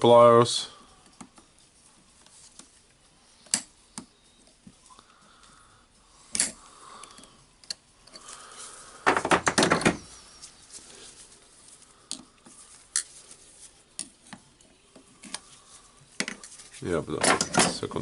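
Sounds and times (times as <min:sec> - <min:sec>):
pliers and steel parts clinking: 0:06.3 - 0:08.3, 0:12.9 - 0:13.2, 0:16.2 - 0:18.0.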